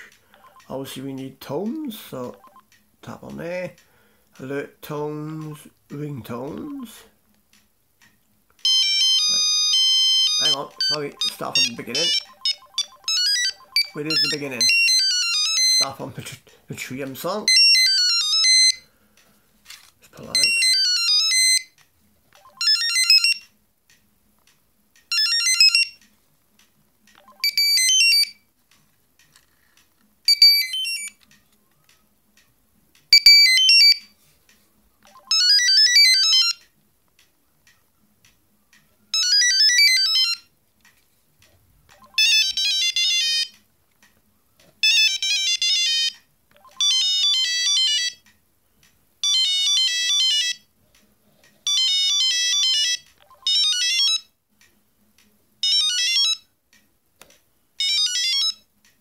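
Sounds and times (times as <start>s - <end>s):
phone ringtone melody snippets: 0.0s - 0.7s, 8.6s - 16.0s, 17.4s - 18.9s, 20.3s - 21.7s, 22.4s - 23.4s, 25.1s - 26.0s, 27.2s - 28.4s, 30.3s - 31.1s, 33.1s - 34.1s, 35.1s - 36.6s, 39.1s - 40.5s, 41.9s - 43.5s, 44.8s - 48.2s, 51.6s - 54.3s, 57.8s - 58.6s.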